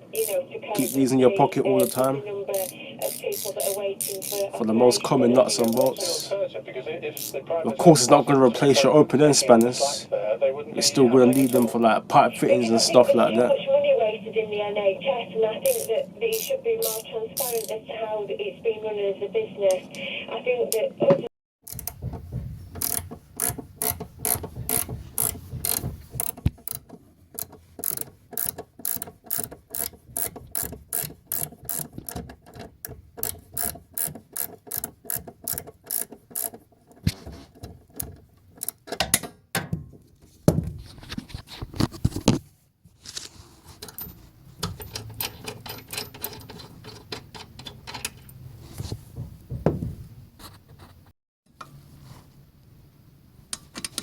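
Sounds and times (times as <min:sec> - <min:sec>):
ratcheting spanner clicking: 0:01.8 - 0:04.4, 0:11.3 - 0:11.7, 0:15.7 - 0:17.8, 0:21.7 - 0:37.0, 0:37.6 - 0:39.3
metal knocking on metal: 0:21.6 - 0:36.6.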